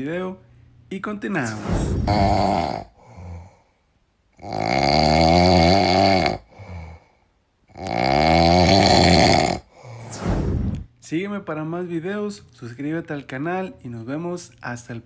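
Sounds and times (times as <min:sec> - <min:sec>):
man snoring loudly: 0:01.4 - 0:03.6, 0:04.4 - 0:07.1, 0:07.7 - 0:10.8
faint breaths: 0:02.9 - 0:04.0, 0:06.4 - 0:07.4, 0:09.6 - 0:10.9.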